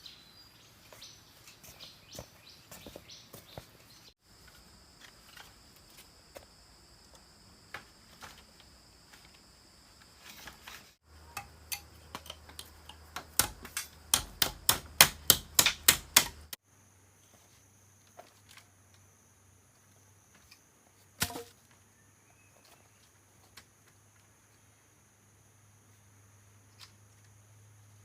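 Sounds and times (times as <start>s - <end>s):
tool striking wood: 11.3s - 16.6s.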